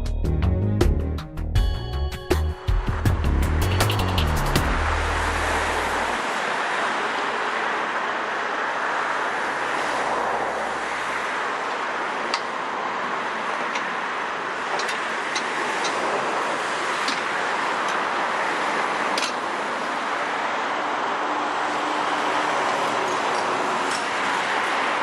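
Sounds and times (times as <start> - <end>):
diesel engine running: 2.4 - 6.2.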